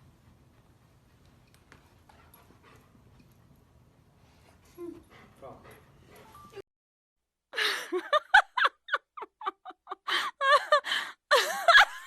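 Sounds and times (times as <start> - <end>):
person laughing: 7.6 - 12.0.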